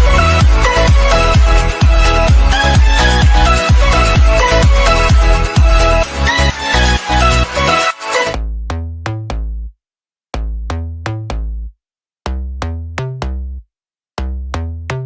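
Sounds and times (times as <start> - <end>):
electronic music with plucked notes: 0.0 - 9.7.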